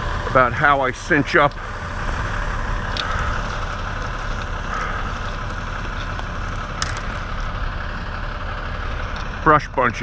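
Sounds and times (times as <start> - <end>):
truck engine idling: 0.0 - 10.0.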